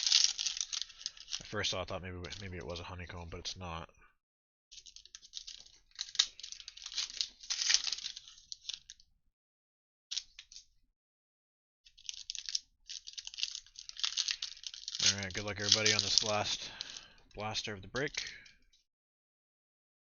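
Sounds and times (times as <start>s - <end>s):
plastic wrapping crinkling and tearing: 0.0s - 1.4s, 4.8s - 9.0s, 11.9s - 17.2s.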